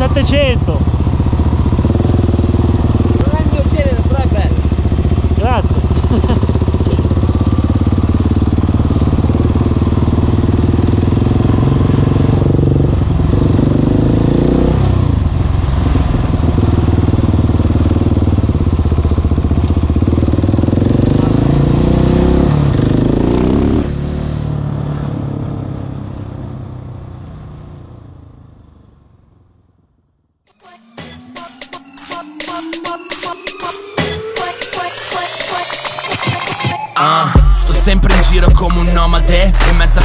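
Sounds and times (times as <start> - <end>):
motorcycle engine under throttle: 0.0 - 30.3.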